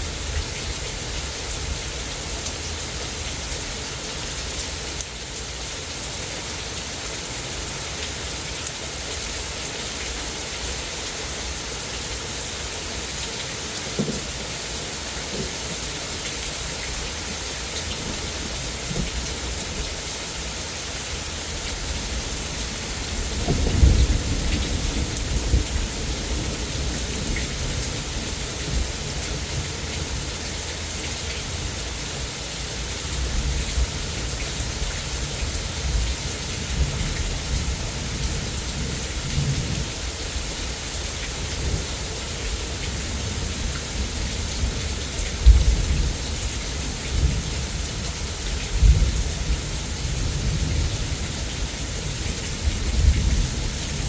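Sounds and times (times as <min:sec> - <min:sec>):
heavy rain pouring: 0:00.0 - 0:54.0
thunder rumbling: 0:21.9 - 0:29.5.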